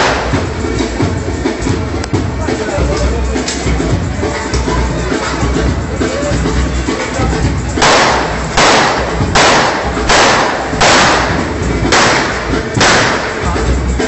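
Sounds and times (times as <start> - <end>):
shotgun shots: 0.0 - 0.5, 7.8 - 13.5.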